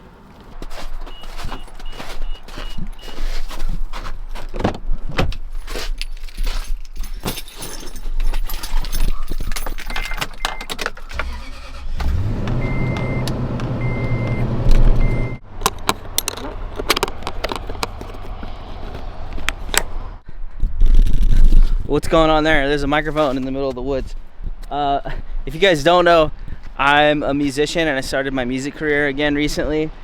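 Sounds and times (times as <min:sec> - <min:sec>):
keys jangling: 0:05.6 - 0:11.1
truck engine starting and idling: 0:10.4 - 0:20.2.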